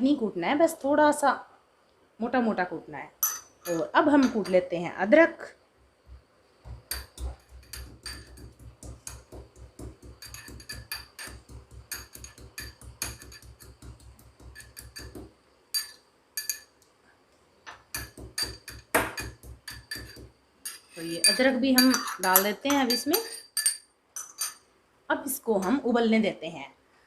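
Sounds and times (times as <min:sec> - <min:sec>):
pestle pounding in a mortar: 0:06.7 - 0:15.3, 0:18.0 - 0:20.4.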